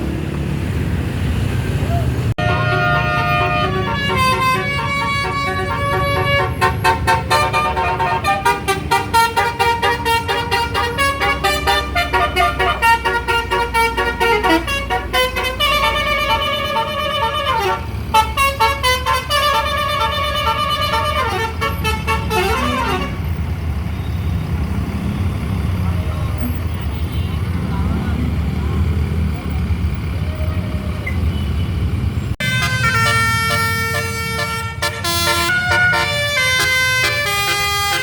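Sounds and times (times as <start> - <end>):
bus engine rumble: 0.0 - 38.0
bus multi-tone horn melody: 2.4 - 23.6, 32.4 - 38.0.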